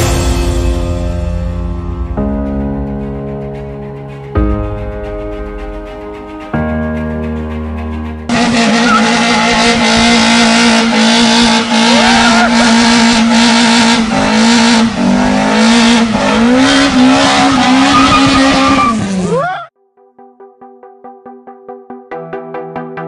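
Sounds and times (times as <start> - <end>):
car engine at high revs: 8.3 - 19.4.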